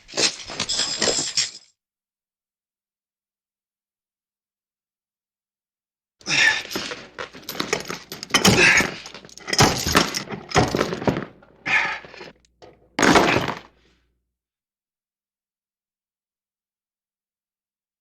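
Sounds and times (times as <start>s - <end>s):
metal chains clanking: 0.1s - 1.7s, 6.3s - 13.6s.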